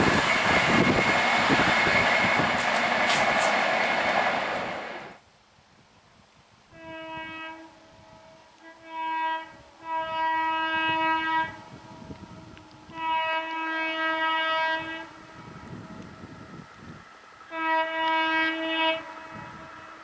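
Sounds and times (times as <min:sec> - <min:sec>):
locomotive horn blasts: 0:06.7 - 0:16.4, 0:17.5 - 0:20.0.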